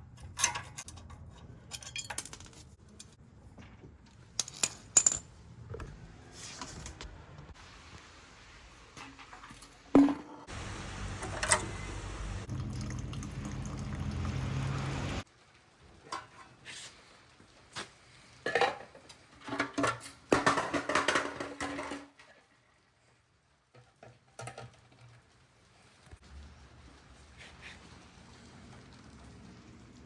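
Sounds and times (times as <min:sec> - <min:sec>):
metal tools clanking: 0:00.2 - 0:02.8, 0:04.4 - 0:05.2.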